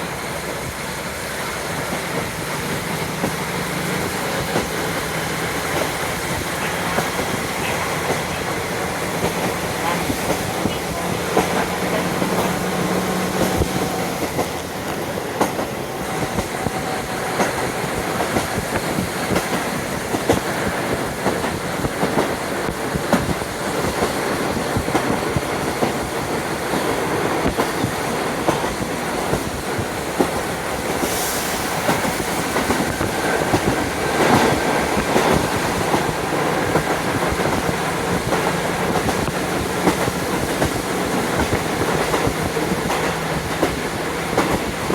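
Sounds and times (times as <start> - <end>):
train running rumble: 0.0 - 44.9
wind noise: 0.1 - 44.9
wheels clattering over rails: 0.9 - 16.8.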